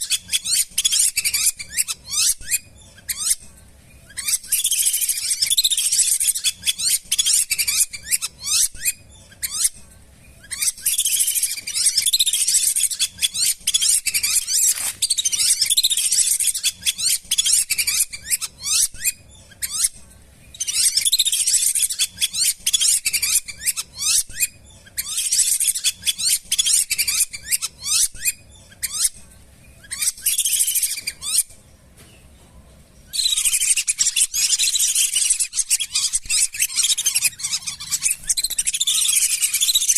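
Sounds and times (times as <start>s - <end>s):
ducks whistling: 33.1s - 39.9s.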